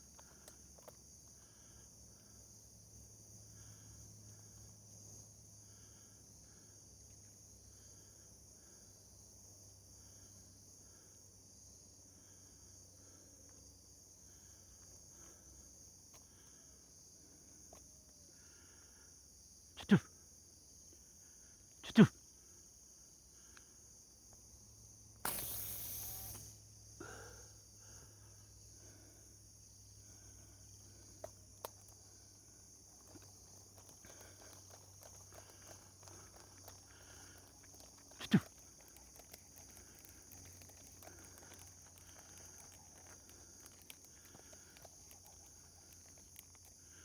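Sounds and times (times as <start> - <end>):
crickets chirring: 0.0 - 47.0
faint insect chorus: 0.0 - 47.0
small clicks: 25.2 - 26.6, 31.2 - 32.0, 33.0 - 47.0.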